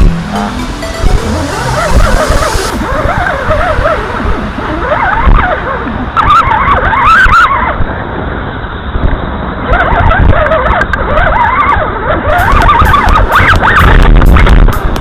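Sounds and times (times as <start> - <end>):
wind rumble on microphone: 1.1 - 15.0.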